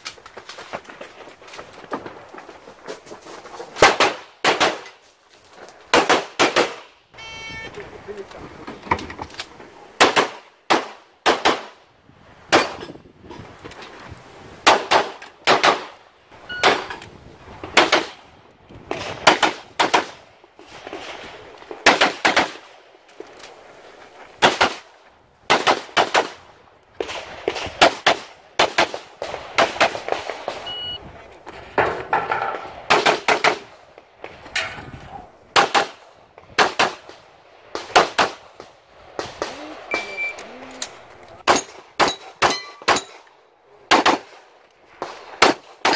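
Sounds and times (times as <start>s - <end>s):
pistol shots: 3.8s - 5.0s, 5.9s - 6.9s, 10.0s - 11.8s, 14.7s - 16.0s, 21.8s - 22.7s, 25.5s - 26.4s, 32.9s - 33.7s, 35.6s - 36.0s, 36.6s - 37.2s, 37.8s - 38.5s, 43.9s - 44.4s, 45.0s - 45.9s.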